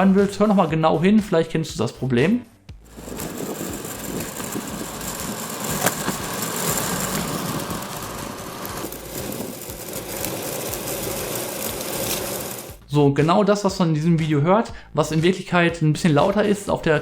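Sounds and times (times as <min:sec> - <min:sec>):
longboard wheels rumbling: 0:02.8 - 0:12.8.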